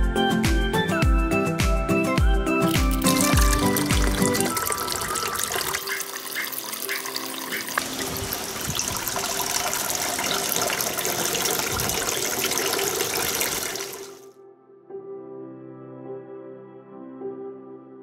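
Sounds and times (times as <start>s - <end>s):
water splashing from small waterfall: 2.7s - 14.2s.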